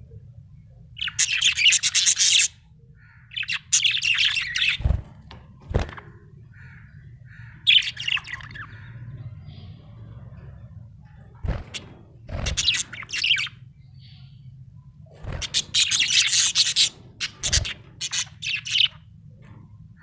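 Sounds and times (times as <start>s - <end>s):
steady low hum: 2.5s - 20.0s
budgerigar chirping: 12.5s - 13.6s, 15.4s - 19.0s.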